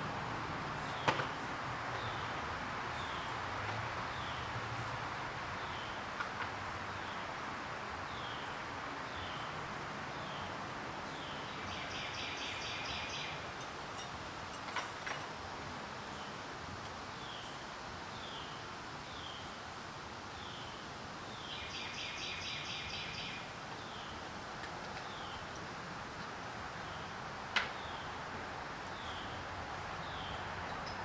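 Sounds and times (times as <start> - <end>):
outdoor background noise: 0.0 - 31.0
bird chirping: 11.2 - 13.5, 21.4 - 24.1.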